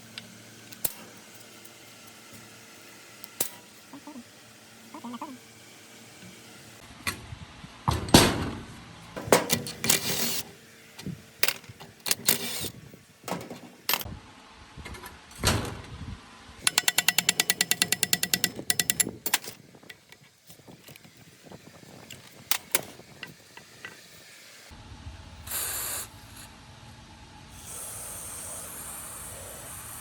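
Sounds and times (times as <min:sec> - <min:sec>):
tools knocking on metal: 0:16.6 - 0:19.6
rapid clicks: 0:16.6 - 0:20.0.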